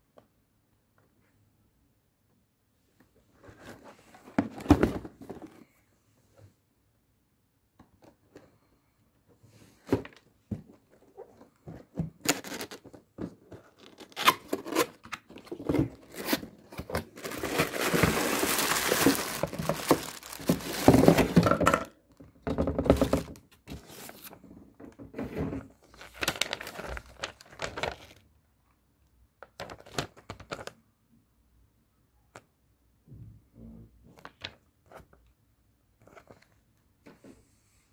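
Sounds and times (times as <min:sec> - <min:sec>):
packaging tearing and crinkling: 0:12.3 - 0:12.8, 0:16.1 - 0:21.4
handling knocks and thunks: 0:16.9 - 0:21.8.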